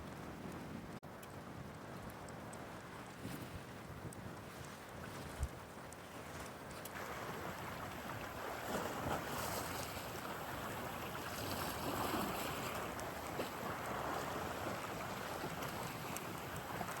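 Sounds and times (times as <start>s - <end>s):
wind: 0.0s - 17.0s
sea water rushing: 6.9s - 17.0s.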